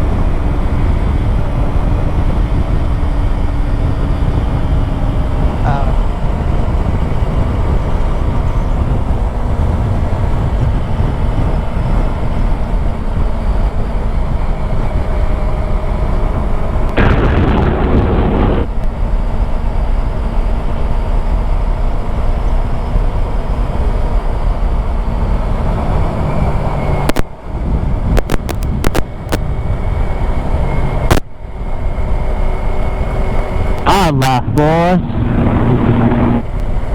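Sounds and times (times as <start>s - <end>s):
wind buffeting microphone: 0.0s - 19.0s, 31.8s - 36.9s
motorcycle engine running: 34.4s - 36.9s.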